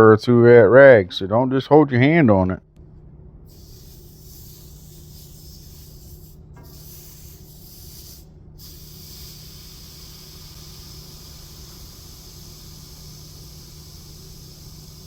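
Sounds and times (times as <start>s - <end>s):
low steady hum: 0.0s - 15.0s
steam hissing: 3.5s - 15.0s.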